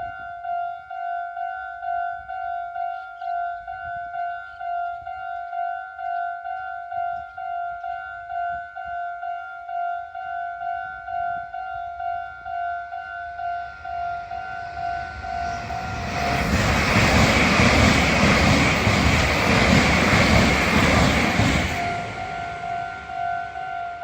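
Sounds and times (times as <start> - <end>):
level-crossing bell ringing: 0.1 - 24.0
electric train passing: 10.3 - 24.0.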